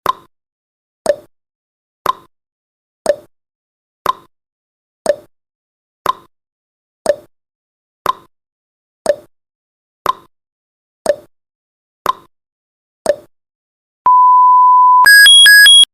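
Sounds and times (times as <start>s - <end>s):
steady single-pitched beep: 14.1s - 15.9s
countdown timer ticking: 15.0s - 15.9s.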